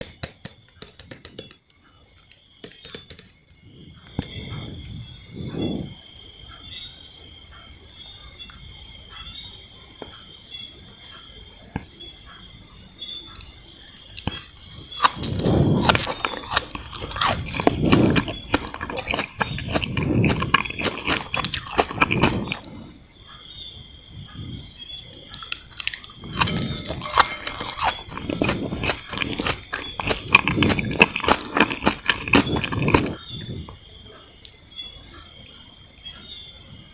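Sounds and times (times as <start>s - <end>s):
crunchy candy chewing: 14.1s - 23.0s, 25.3s - 33.8s.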